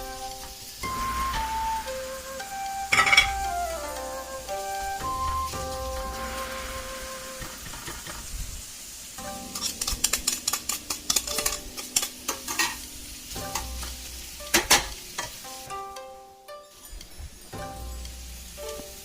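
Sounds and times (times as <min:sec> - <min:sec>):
vegetables sizzling in a pan: 0:00.0 - 0:19.0
utensil knocking and scraping pan: 0:02.9 - 0:03.4.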